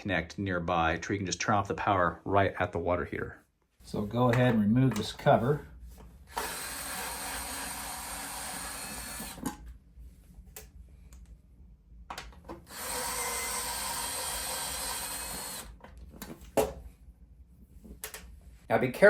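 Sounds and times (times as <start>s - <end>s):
electric screwdriver running: 6.3s - 9.5s, 12.6s - 15.8s.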